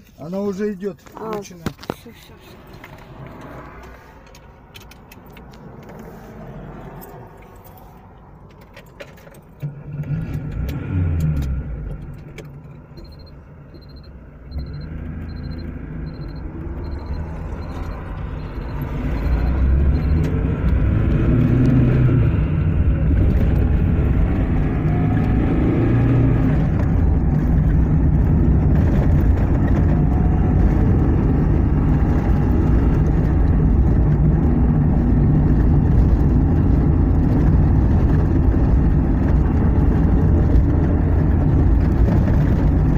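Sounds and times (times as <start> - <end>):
car engine driving: 0.0 - 42.9
faint repeating beep: 13.0 - 20.3.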